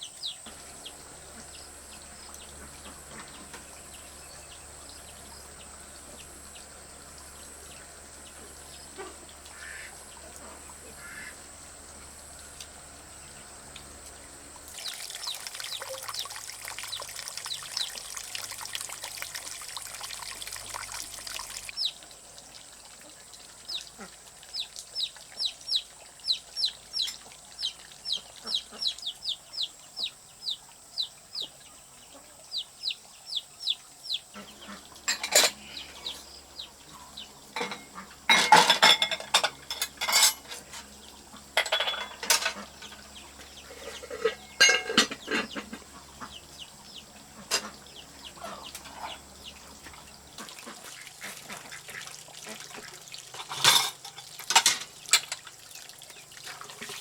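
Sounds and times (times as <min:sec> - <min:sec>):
dishes and utensils clattering: 0:35.1 - 0:35.7, 0:37.6 - 0:40.9, 0:41.5 - 0:45.9, 0:53.3 - 0:55.4.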